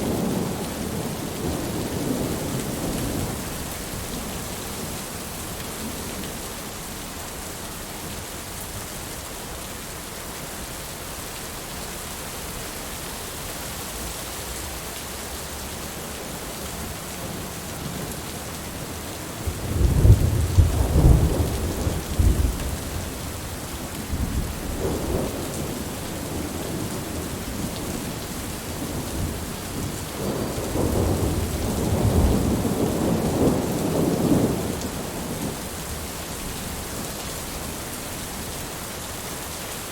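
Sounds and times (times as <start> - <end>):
heavy rain hissing: 0.0 - 39.9
thunder rumbling: 19.4 - 35.7.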